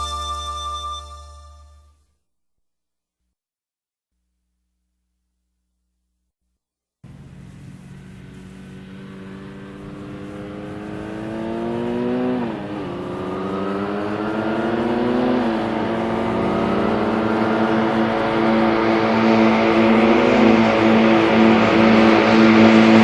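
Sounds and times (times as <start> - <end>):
car engine accelerating: 7.0 - 23.0.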